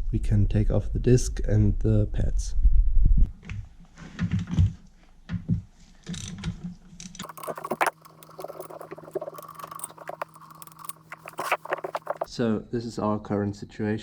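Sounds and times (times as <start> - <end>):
metallic clicks and scraping: 7.2 - 12.3.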